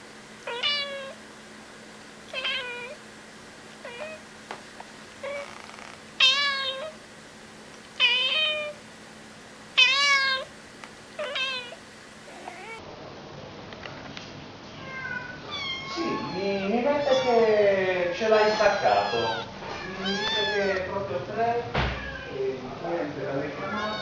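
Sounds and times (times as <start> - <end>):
cat meowing: 0.4 - 1.2, 2.3 - 3.0, 3.8 - 4.2, 5.2 - 7.0, 8.0 - 8.8, 9.8 - 10.5, 11.2 - 12.8, 14.8 - 17.6, 18.2 - 20.9, 21.9 - 22.4, 23.6 - 24.0.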